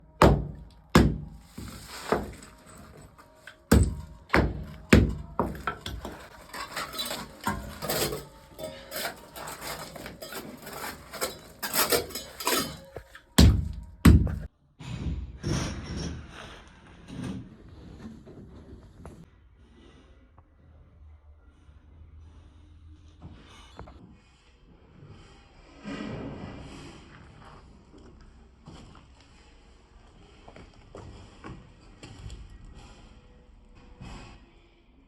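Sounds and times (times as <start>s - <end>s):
clattering and rustling: 0.2s - 14.5s.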